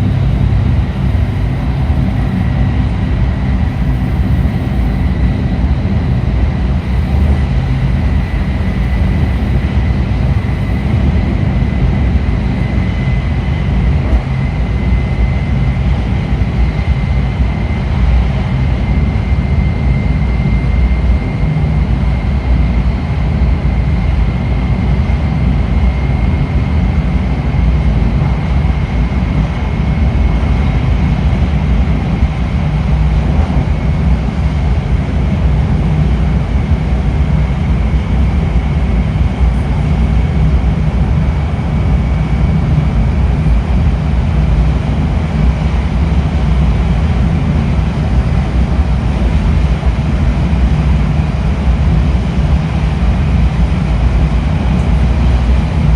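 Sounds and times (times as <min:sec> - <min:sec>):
train wheels rumbling on track: 0:00.0 - 0:16.5.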